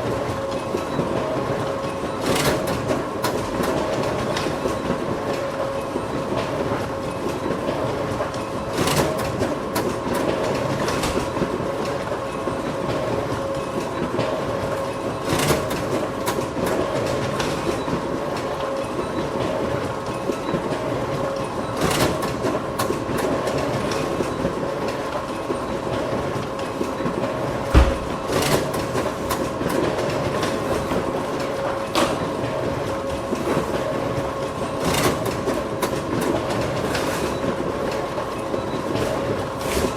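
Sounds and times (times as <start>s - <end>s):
photocopier whirring: 0.0s - 39.9s
low thump: 27.7s - 28.2s.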